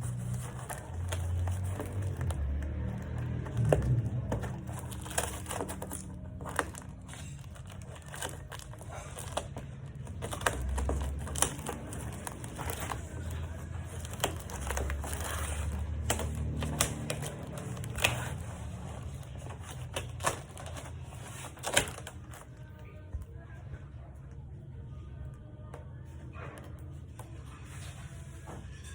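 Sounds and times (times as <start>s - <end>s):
packaging crinkling: 0.0s - 22.6s.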